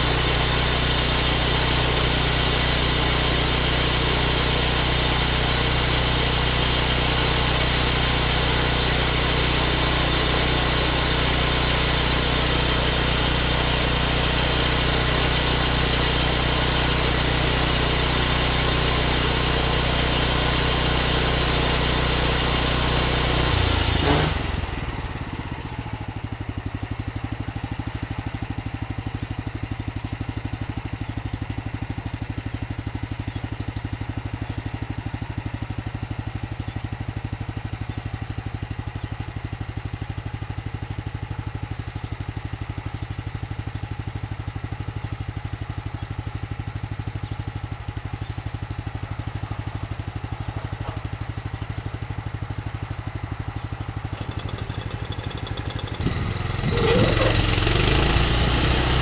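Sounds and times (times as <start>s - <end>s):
sawmill blade hissing: 0.0s - 24.8s, 53.9s - 59.0s
engine idling: 0.0s - 59.0s.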